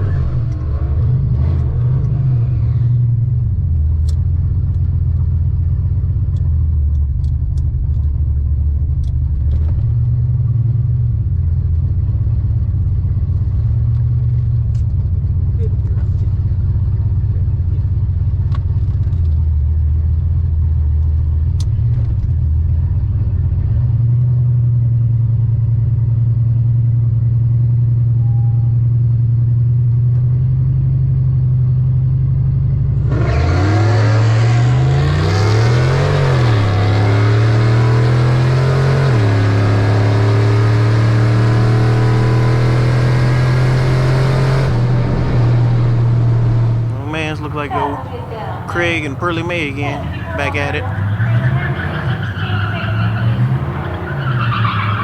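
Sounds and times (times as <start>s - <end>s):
race cars launching and accelerating: 33.0s - 55.0s
race car engines idling: 44.8s - 55.0s.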